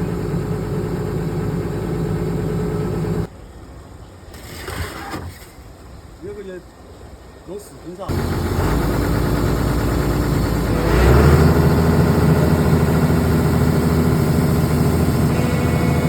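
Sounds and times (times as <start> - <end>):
excavator diesel engine running: 0.0 - 3.3, 8.1 - 16.0.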